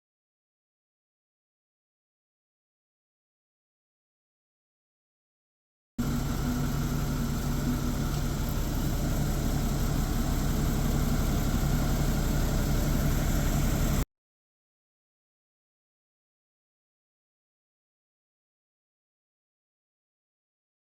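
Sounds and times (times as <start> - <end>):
machine humming: 6.0 - 14.0.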